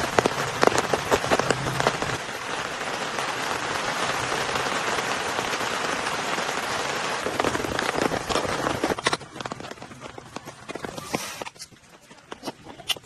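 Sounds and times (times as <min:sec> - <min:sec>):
raindrop strikes: 0:00.0 - 0:11.0
heavy rain pouring: 0:00.0 - 0:12.2.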